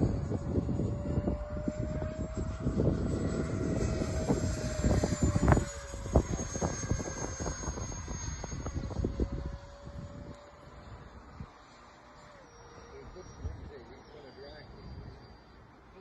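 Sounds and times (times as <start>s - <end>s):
wind buffeting microphone: 0.0s - 11.6s
electric ducted fan whining: 0.0s - 16.0s.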